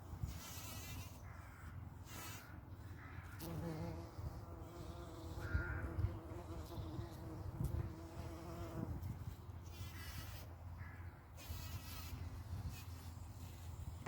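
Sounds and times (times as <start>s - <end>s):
bee buzzing: 3.4s - 10.5s, 11.4s - 14.0s.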